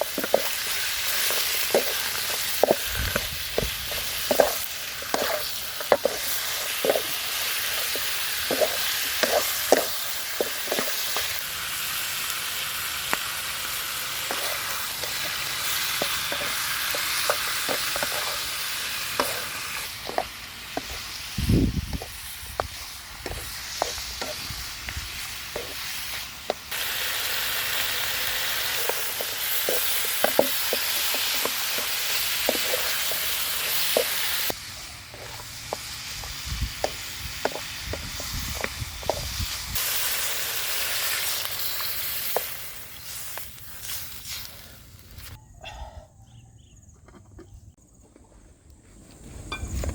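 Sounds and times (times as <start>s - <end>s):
utensil scraping a pan: 0.0s - 11.3s, 14.2s - 21.0s
food sizzling in a pan: 0.0s - 45.4s.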